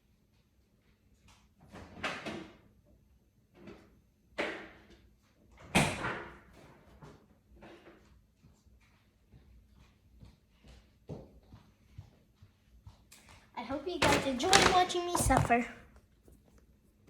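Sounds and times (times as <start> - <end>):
doors shutting with knocks: 13.9 - 15.7.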